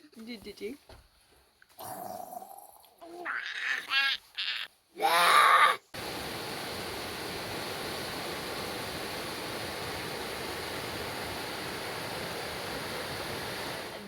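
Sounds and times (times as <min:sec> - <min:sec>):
flowing water rushing: 0:06.0 - 0:14.0.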